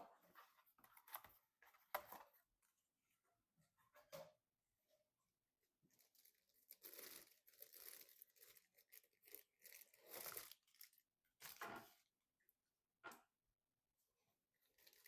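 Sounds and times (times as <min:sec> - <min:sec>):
faint crinkling and tearing: 0:05.9 - 0:12.1, 0:14.7 - 0:15.0.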